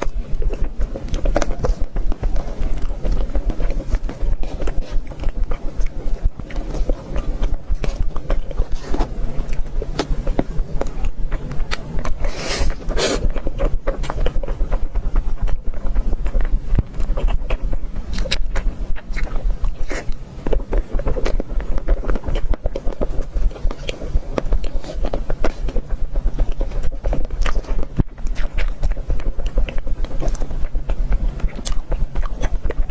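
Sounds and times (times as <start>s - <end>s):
crunching and smacking chewing: 0.0s - 32.9s
steady low rumble: 0.0s - 32.9s.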